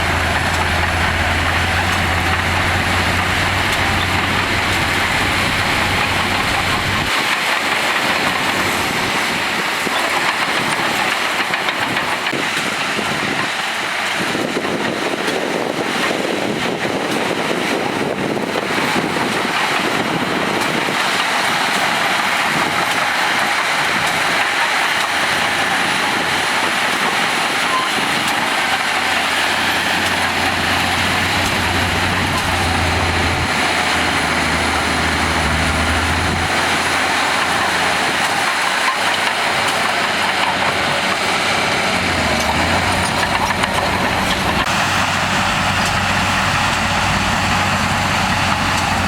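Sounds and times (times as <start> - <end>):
diesel machinery engines running: 0.0 - 49.0
deep low rumble: 30.5 - 36.5.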